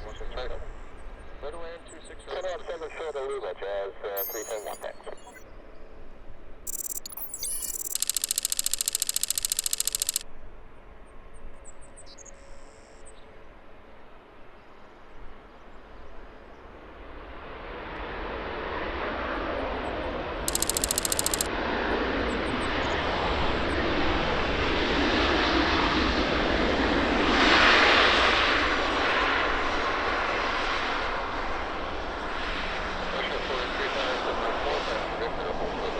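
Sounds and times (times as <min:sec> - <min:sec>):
rapid ticking: 0:06.7 - 0:10.2, 0:20.5 - 0:21.5.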